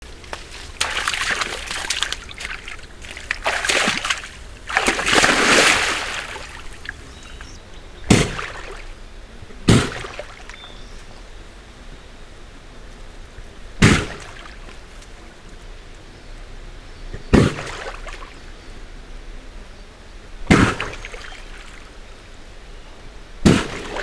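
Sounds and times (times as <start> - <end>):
moose snorting: 0.4 - 7.6
moose sneezing: 1.6 - 7.6.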